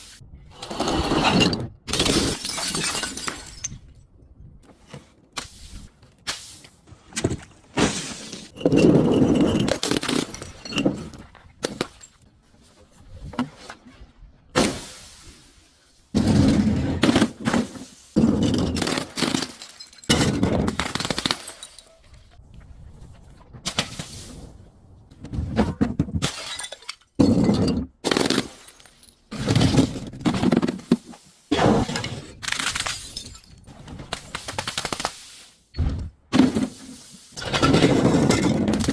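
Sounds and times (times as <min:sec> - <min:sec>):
glass bottles breaking and crunching: 0:01.3 - 0:03.9, 0:08.5 - 0:12.2, 0:16.2 - 0:22.2, 0:26.1 - 0:30.9, 0:31.8 - 0:35.2, 0:37.4 - 0:38.9.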